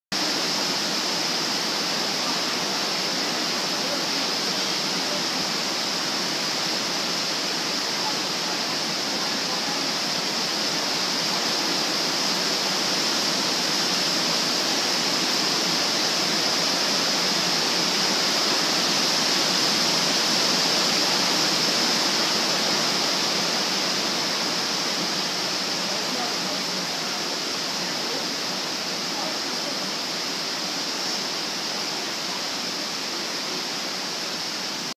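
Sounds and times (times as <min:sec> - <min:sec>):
heavy rain on a metal roof: 0:00.1 - 0:34.9.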